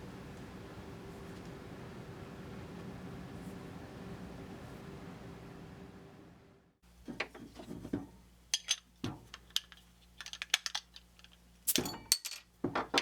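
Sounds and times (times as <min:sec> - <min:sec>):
steady low hum: 0:00.0 - 0:07.0.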